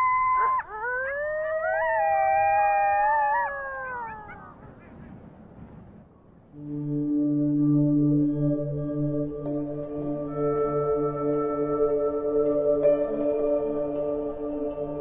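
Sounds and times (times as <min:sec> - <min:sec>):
coyotes howling: 0:00.0 - 0:05.4.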